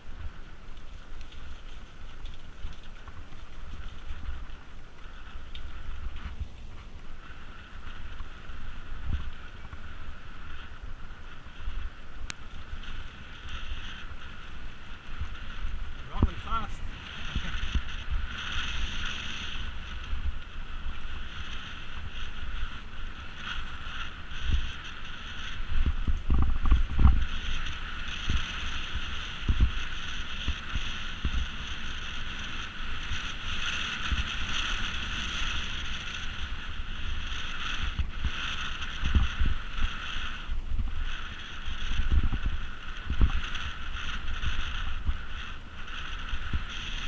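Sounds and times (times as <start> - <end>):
mountain bike rumbling over rough ground: 0.0 - 47.0
wind noise: 0.0 - 47.0
steady high buzz: 7.2 - 25.7.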